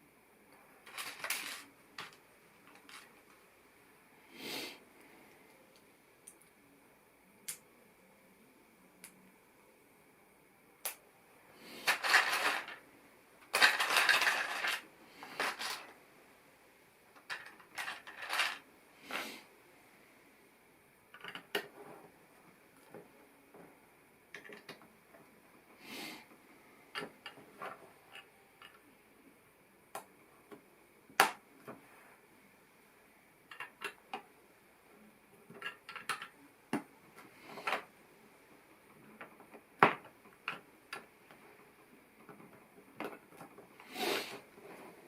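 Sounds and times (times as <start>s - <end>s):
plastic pieces clicking: 0.9s - 3.1s, 11.8s - 12.8s, 13.4s - 15.9s, 17.2s - 18.6s.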